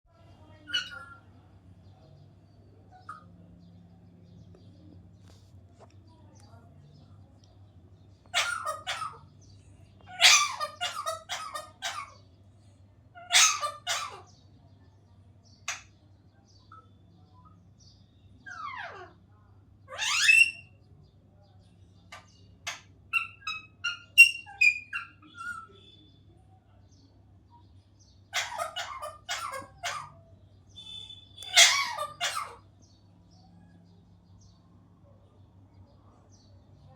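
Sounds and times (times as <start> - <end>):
parrot squawking: 0.7 - 1.2, 8.3 - 9.3, 10.1 - 12.2, 13.2 - 14.3, 19.9 - 20.7, 22.7 - 25.9, 28.3 - 30.2, 30.8 - 32.7
parrot chirps and clicks: 31.4 - 32.2.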